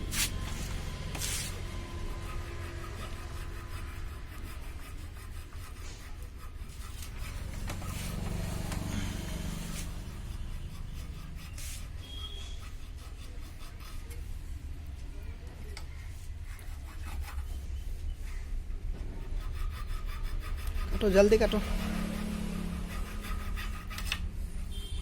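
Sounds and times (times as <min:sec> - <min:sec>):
tape scraping off metal: 0:00.0 - 0:01.8
low hum of traffic: 0:00.0 - 0:25.0.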